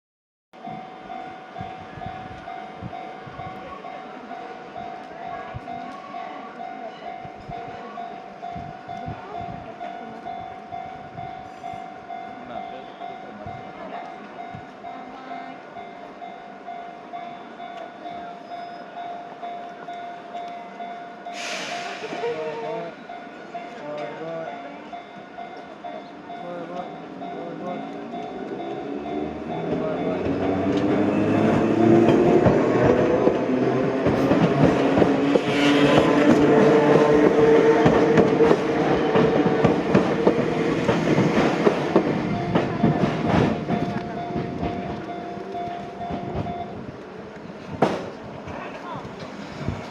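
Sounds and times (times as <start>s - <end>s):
level-crossing warning bell: 0.6s - 47.4s
train wheels clicking over rails: 28.2s - 49.9s.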